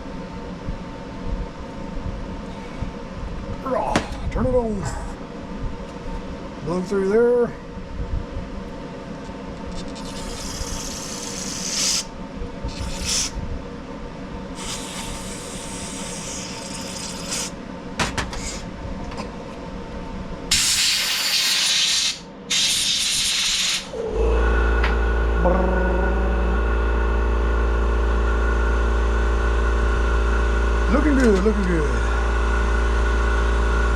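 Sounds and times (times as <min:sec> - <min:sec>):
compressed air hissing: 0:10.0 - 0:12.1, 0:12.7 - 0:13.4, 0:14.5 - 0:17.6, 0:20.5 - 0:24.0
motor humming: 0:23.9 - 0:33.9.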